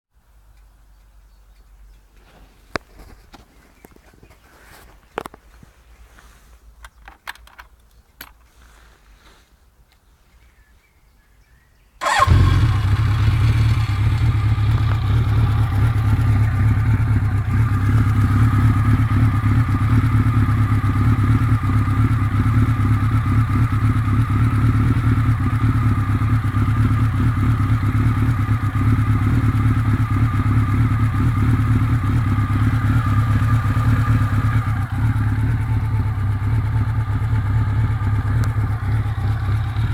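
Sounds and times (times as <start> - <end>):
motorcycle engine starting and idling: 12.0 - 39.9.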